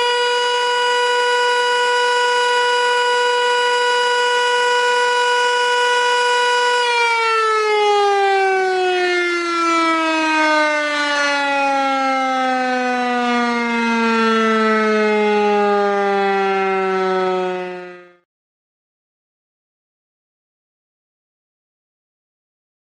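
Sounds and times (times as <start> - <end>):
siren sliding down in pitch: 0.0 - 18.2.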